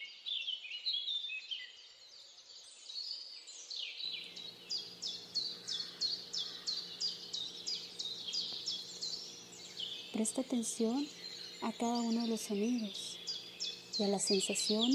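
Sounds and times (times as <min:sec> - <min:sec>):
birds chirping: 0:03.9 - 0:14.9
faint low hum: 0:04.1 - 0:14.9.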